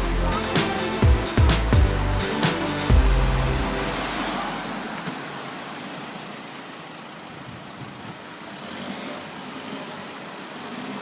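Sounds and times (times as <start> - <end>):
traffic hum: 0.0 - 9.4.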